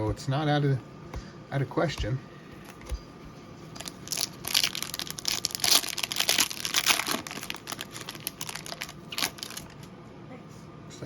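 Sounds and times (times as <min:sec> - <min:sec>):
foil wrapper crinkling and tearing: 0:03.7 - 0:09.8.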